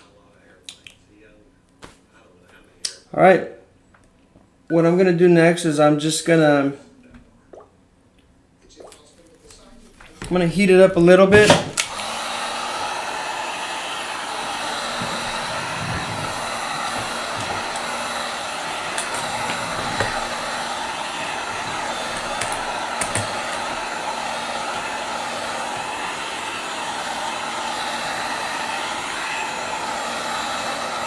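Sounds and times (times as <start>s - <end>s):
heat gun blowing: 10.2s - 31.0s.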